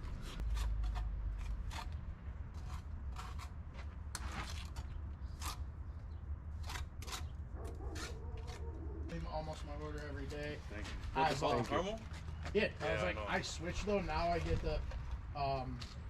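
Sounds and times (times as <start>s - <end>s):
trowel scraping on brick: 0.0s - 5.7s, 6.6s - 8.7s.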